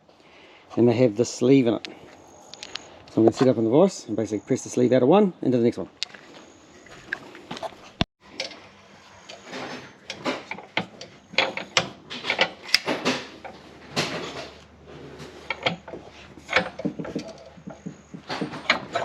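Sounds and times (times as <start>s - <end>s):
metal clicks and knocks: 9.4s - 14.6s, 15.4s - 19.0s.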